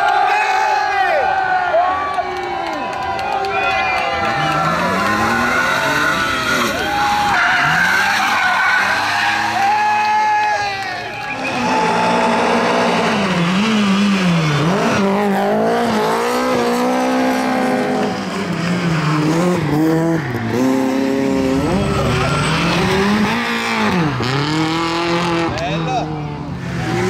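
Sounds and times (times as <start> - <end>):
car engine revving: 4.1 - 10.1, 11.1 - 27.0
tyres squealing: 4.2 - 12.4, 20.2 - 24.4.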